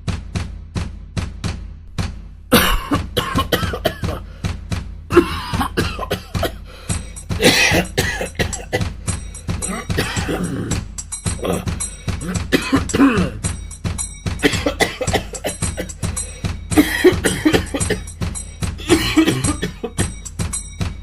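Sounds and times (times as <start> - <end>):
steady drum beat: 0.0 - 21.0
person coughing loudly: 2.5 - 4.4, 5.1 - 9.0, 9.6 - 10.8, 11.4 - 13.5, 14.4 - 16.0, 16.8 - 18.1, 18.8 - 20.2.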